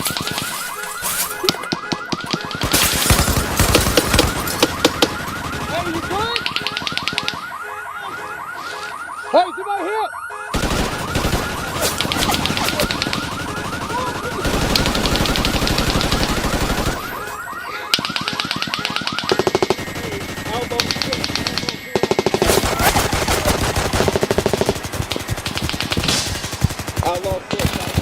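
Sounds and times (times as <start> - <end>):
warbling electronic alarm: 0.0 - 21.9
automatic gunfire bursts: 2.3 - 7.5, 10.5 - 17.3, 18.0 - 28.0.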